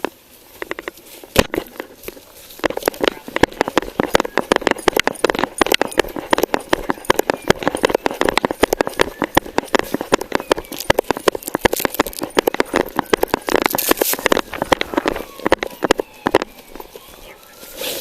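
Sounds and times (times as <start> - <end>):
rapid knocking and clattering: 2.6 - 17.0.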